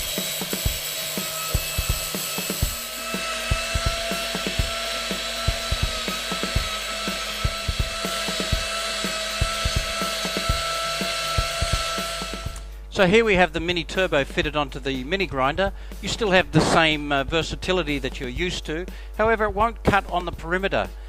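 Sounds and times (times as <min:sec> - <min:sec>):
power carving tool whining: 0:00.0 - 0:12.7.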